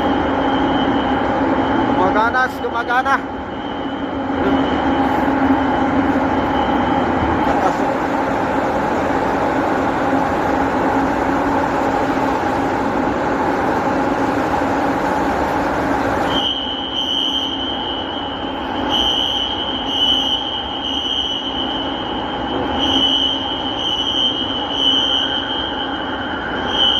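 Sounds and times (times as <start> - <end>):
harsh continuous fire alarm: 0.0 - 26.9
shrill high-pitched tone: 16.3 - 26.9.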